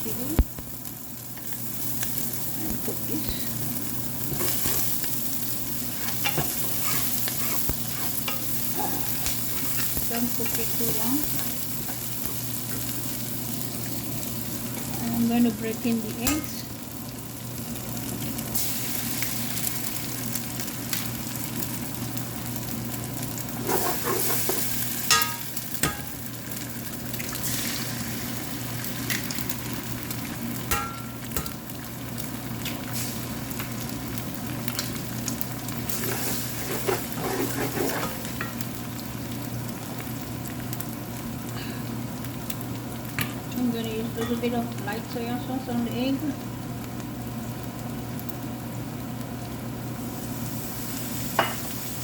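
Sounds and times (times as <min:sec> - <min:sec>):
eggs sizzling in oil: 0:00.0 - 0:52.0
spatula clinking on pan: 0:25.1 - 0:26.2, 0:30.7 - 0:31.6.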